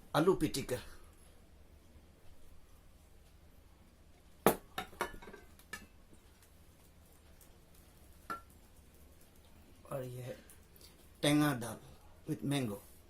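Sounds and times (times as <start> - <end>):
dishes clinking: 4.5 - 6.0, 8.3 - 8.5.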